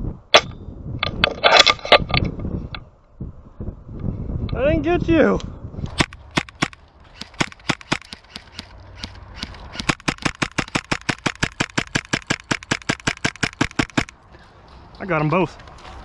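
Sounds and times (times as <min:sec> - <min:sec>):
airsoft gunfire: 0:06.0 - 0:09.1, 0:09.7 - 0:14.1.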